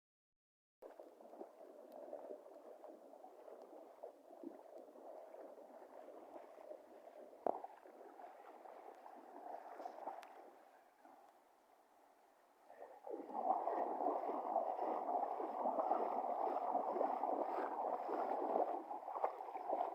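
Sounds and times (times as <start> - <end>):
flowing water: 0.8 - 11.3, 12.7 - 19.9.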